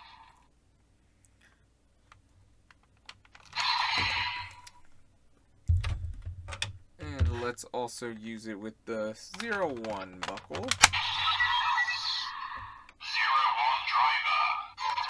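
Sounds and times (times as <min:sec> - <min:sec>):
plastic toy buckles clicking: 0:02.1 - 0:05.0, 0:05.7 - 0:07.5, 0:09.3 - 0:13.0
low thump: 0:05.7 - 0:07.5.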